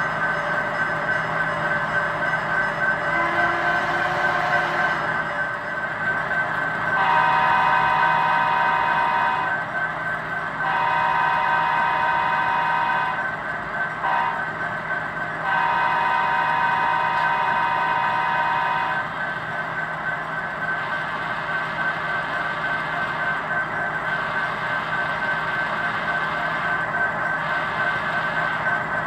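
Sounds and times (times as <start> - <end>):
model train horn blasts: 3.1 - 5.3, 6.9 - 9.6, 10.6 - 13.3, 14.0 - 14.6, 15.4 - 19.2.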